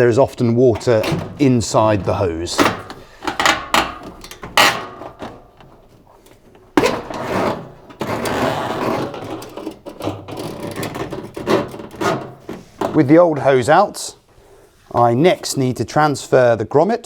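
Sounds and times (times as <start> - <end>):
hose scraping inside machine: 0.6 - 13.1.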